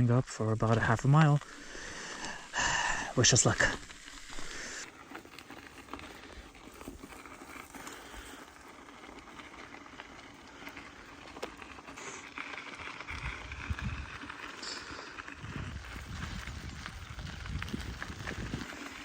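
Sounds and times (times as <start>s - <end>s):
bike tyres crunching on gravel: 0.0s - 19.0s
bike clicks and rattles: 0.6s - 19.0s.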